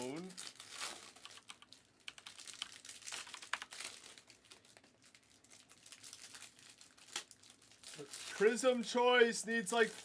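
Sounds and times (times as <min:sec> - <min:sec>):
plastic and foil packaging crinkling: 0:00.0 - 0:10.0.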